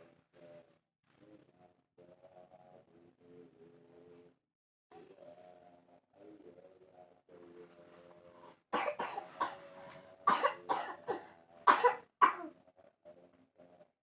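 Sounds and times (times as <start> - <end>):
person coughing hard: 8.8 - 9.7, 10.3 - 12.5.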